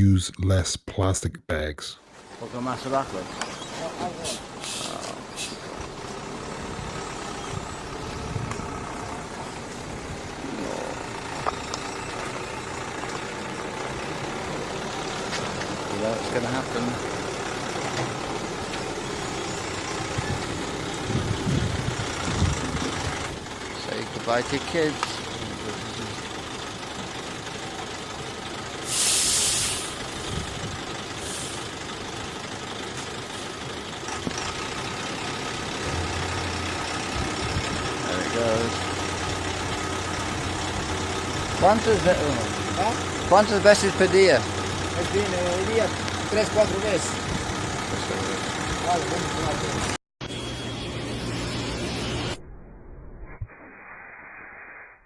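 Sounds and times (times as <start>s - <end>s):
engine running steadily: 2.6s - 50.7s
loud hiss burst: 28.9s - 30.0s.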